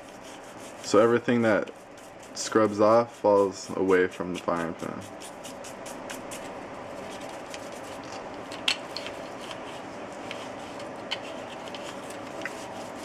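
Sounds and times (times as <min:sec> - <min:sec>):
toothbrush scrubbing metal: 0:00.0 - 0:08.0.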